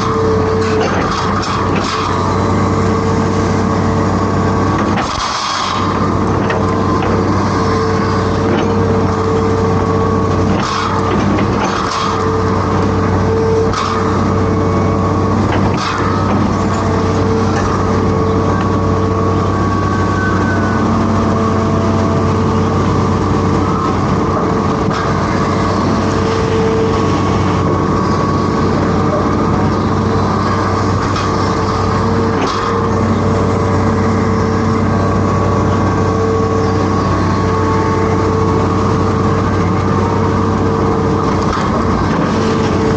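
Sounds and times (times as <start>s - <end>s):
excavator diesel engine running: 0.0s - 42.9s.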